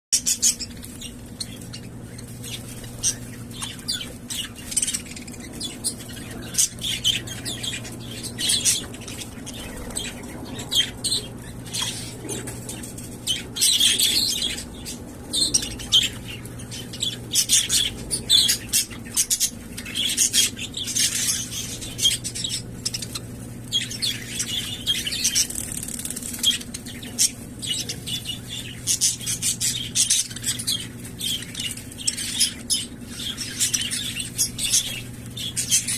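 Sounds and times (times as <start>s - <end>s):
budgerigars chirping: 0.2s - 35.9s
wing flutters: 25.2s - 27.4s.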